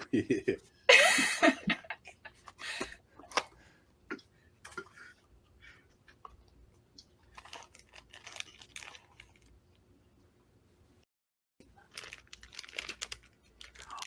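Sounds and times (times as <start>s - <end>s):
packaging crinkling and rustling: 7.2s - 9.6s, 11.6s - 14.0s.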